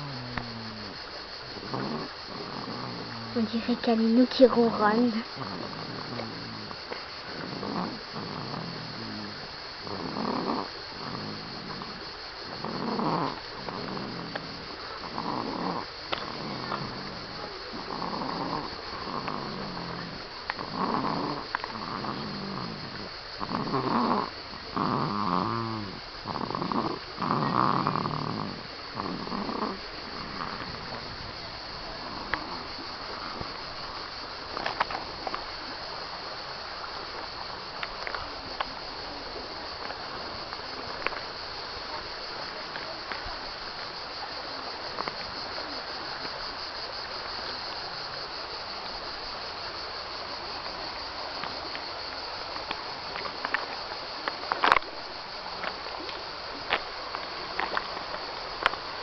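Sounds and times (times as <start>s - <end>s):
rhythmic snoring: 0.0s - 36.2s.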